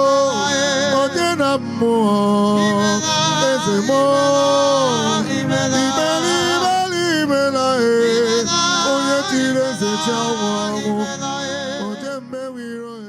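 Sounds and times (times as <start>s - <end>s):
person singing solo: 8.1s - 12.6s.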